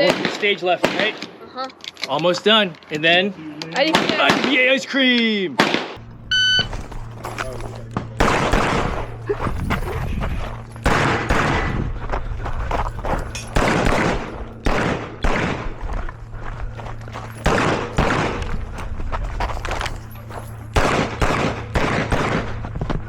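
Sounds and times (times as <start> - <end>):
rapid pistol shots: 5.6 - 6.0, 8.1 - 9.2, 10.8 - 11.8, 13.5 - 15.8, 17.4 - 18.6, 20.8 - 22.6.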